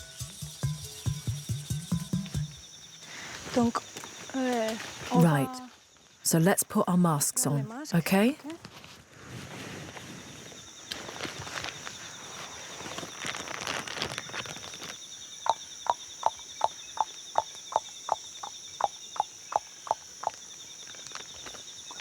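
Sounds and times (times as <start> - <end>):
high insect drone: 0.0 - 7.7, 9.9 - 22.0
footsteps through undergrowth: 8.6 - 15.0.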